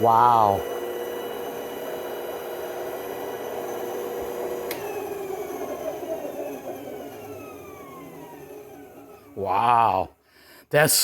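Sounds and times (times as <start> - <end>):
band saw motor hum: 0.0 - 10.0
motor spinning down whine: 0.0 - 10.0.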